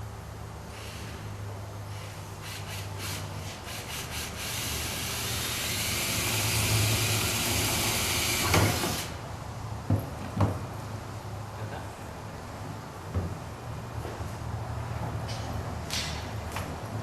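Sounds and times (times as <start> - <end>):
electric drill drilling metal: 2.5 - 9.1.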